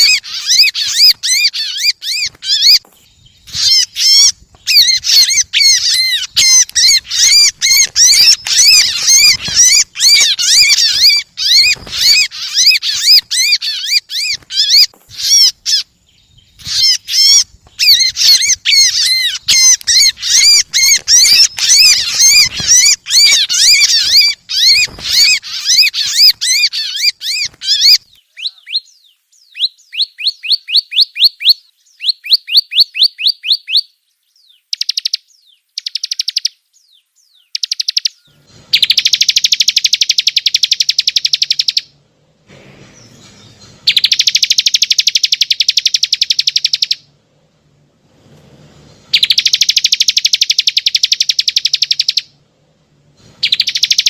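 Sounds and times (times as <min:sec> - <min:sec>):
bird song chattering and trilling: 0:00.0 - 0:42.0, 0:42.9 - 0:47.1, 0:49.0 - 0:52.4, 0:53.2 - 0:54.0.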